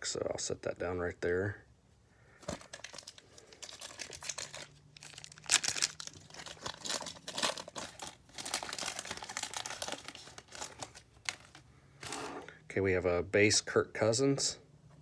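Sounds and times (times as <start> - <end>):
wrapper tearing and crinkling: 2.4 - 12.3.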